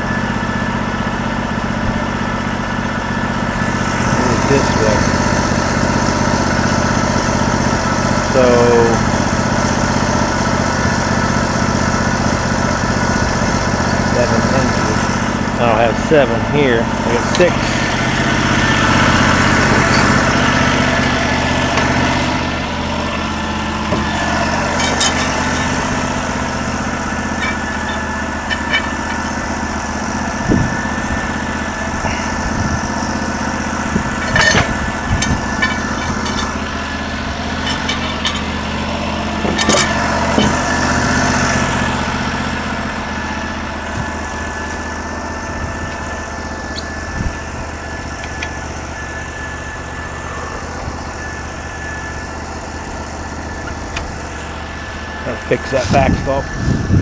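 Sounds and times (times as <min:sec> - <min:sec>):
small gasoline engine running: 0:00.0 - 0:57.0.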